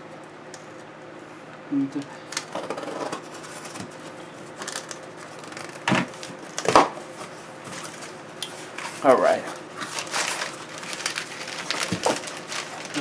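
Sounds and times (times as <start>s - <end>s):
cardboard box scraping and rustling: 2.6s - 4.5s, 7.1s - 13.0s
cardboard snapping: 4.6s - 9.0s, 9.8s - 13.0s.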